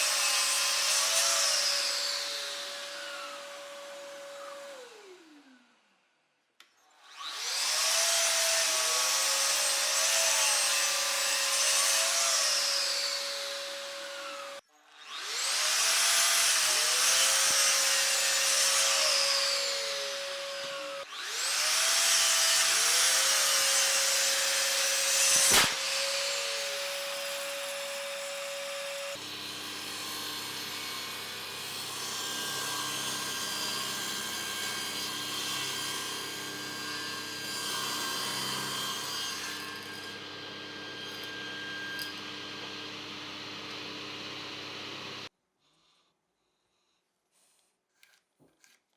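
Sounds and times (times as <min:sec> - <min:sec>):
power tool cutting wood: 0:00.0 - 0:05.8, 0:06.9 - 0:45.3
sharp click: 0:25.4 - 0:25.8.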